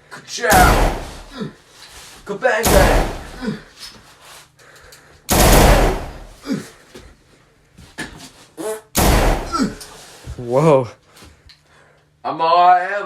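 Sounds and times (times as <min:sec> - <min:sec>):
loud gunshots: 0:00.5 - 0:01.3, 0:02.6 - 0:03.4, 0:05.3 - 0:06.4, 0:09.0 - 0:09.7.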